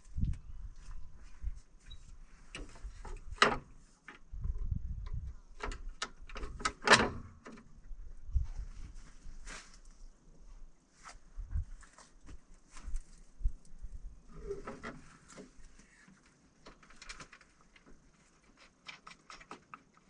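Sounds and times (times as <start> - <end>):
wind rumble on microphone: 0.0 - 6.7, 7.8 - 9.5, 11.2 - 11.9, 12.8 - 15.0
clicks and knocks of parts handled: 14.6 - 20.0.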